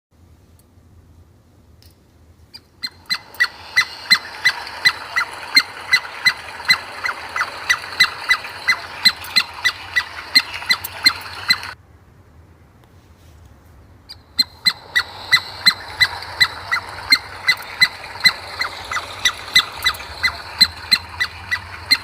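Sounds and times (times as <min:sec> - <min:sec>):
squirrel chipping call: 0:02.8 - 0:11.8, 0:14.1 - 0:22.0.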